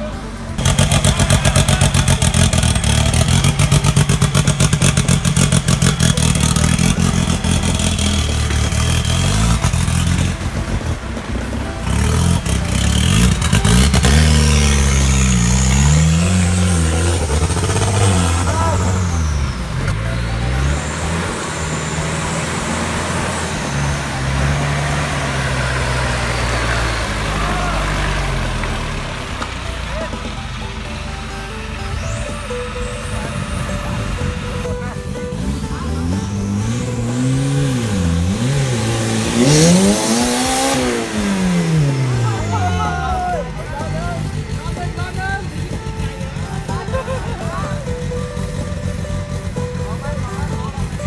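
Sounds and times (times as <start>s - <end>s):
constant rushing noise: 0.0s - 51.0s
off-road vehicle engine revving: 0.0s - 51.0s.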